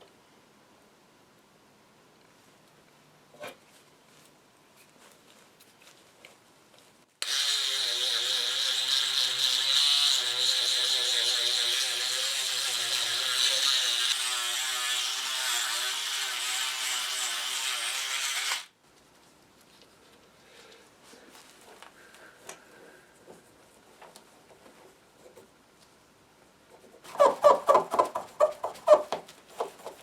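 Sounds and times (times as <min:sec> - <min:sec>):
electric power tool motor: 0:07.2 - 0:18.7.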